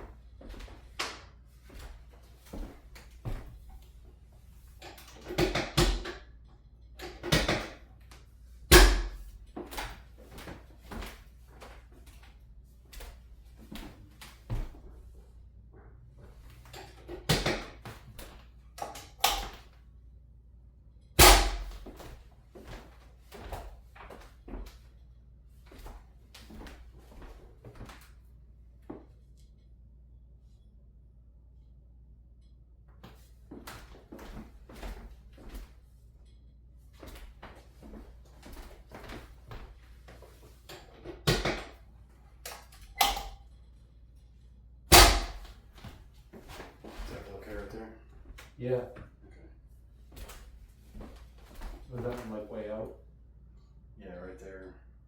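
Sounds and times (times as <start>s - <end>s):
rustling of body and table: 21.8s - 29.8s, 45.6s - 52.6s.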